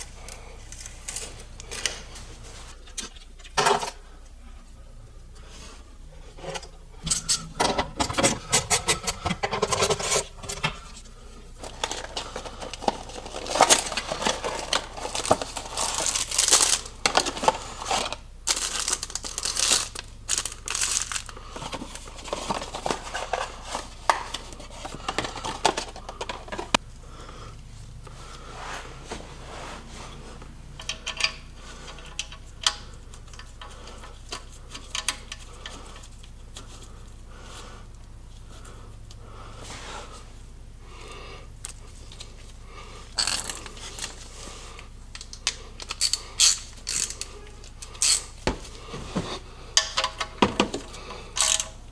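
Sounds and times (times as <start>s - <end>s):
objects rustling and crinkling: 0.0s - 26.9s, 41.6s - 49.5s
objects clattering: 6.3s - 26.8s, 43.2s - 44.3s.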